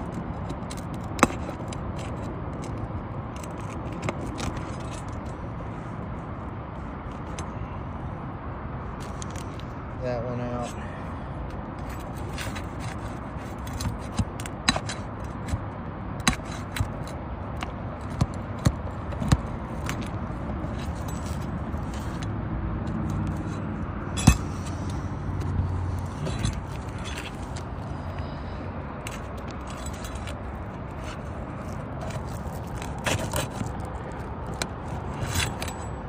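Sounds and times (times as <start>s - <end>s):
metal tool prying nails: 12.0s - 15.6s, 16.2s - 21.4s, 24.1s - 25.0s.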